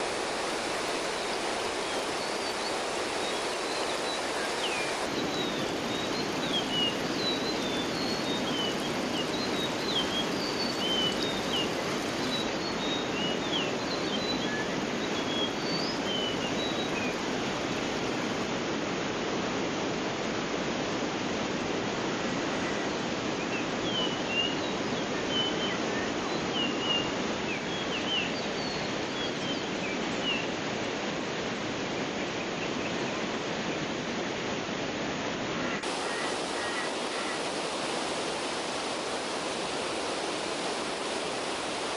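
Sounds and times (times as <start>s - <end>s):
stream rushing: 0.0s - 41.9s.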